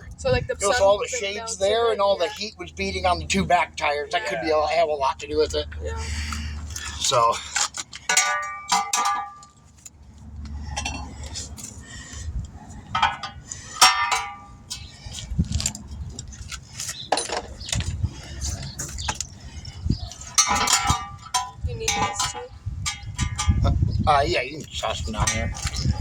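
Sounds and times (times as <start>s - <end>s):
metal tools clinking and clattering: 6.7s - 9.9s, 10.7s - 11.8s, 12.8s - 23.7s, 24.9s - 26.0s.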